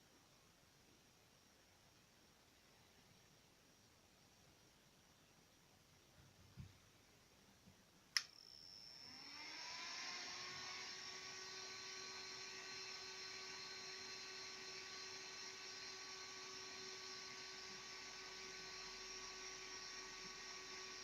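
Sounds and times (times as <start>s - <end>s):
small electric fan whirring: 8.1s - 21.0s.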